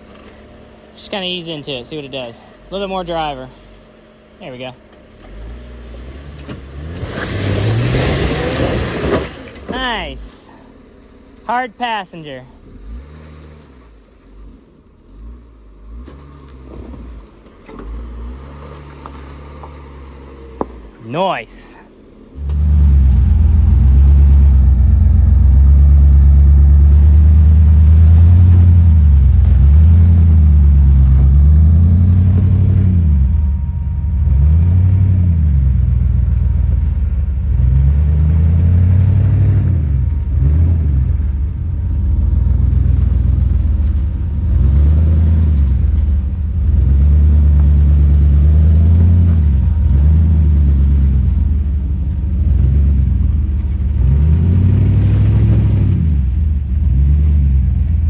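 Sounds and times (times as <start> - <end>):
truck engine revving: 0.0 - 58.0.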